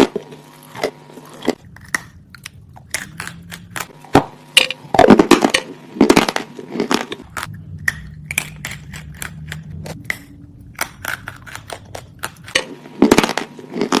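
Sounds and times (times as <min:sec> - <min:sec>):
clay being crunched and chewed: 0:01.4 - 0:04.0, 0:06.8 - 0:14.0.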